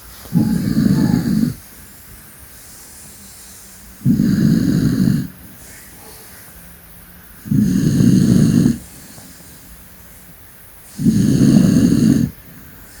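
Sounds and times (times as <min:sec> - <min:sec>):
dog snoring loudly: 0:00.3 - 0:01.8, 0:04.0 - 0:05.6, 0:07.4 - 0:09.6, 0:10.8 - 0:13.0.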